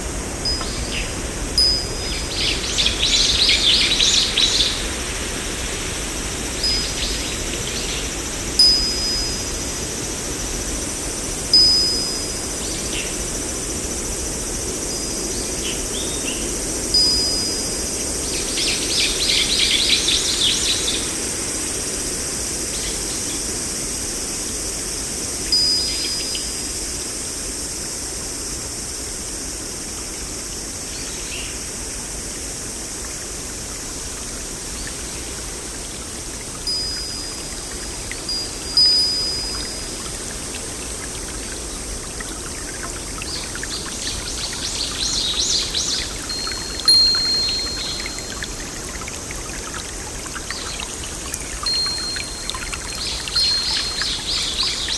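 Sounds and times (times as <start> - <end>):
flowing water: 0.0 - 22.3, 31.8 - 54.9
bird trill: 36.7 - 54.9
birds whistling: 36.7 - 54.9.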